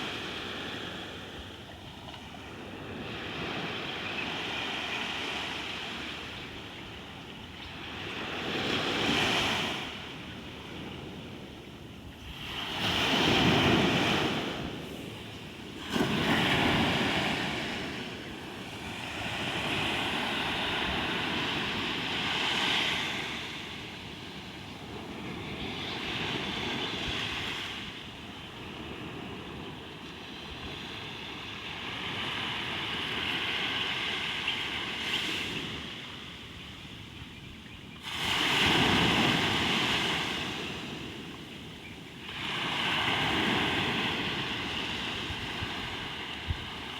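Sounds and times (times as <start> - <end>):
ocean waves breaking: 7.8 - 27.9.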